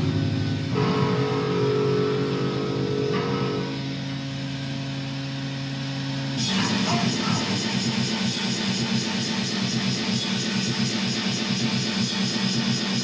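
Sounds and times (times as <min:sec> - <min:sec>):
distorted guitar noise metal: 0:00.0 - 0:05.6, 0:06.4 - 0:13.0.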